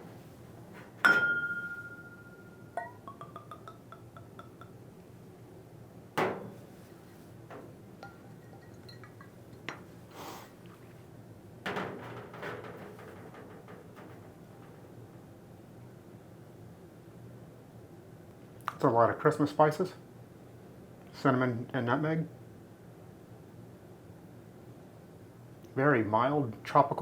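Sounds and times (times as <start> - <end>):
glass knocking on hard surface: 1.0 - 4.7
glass clinking on glass: 1.0 - 4.8, 8.0 - 9.9.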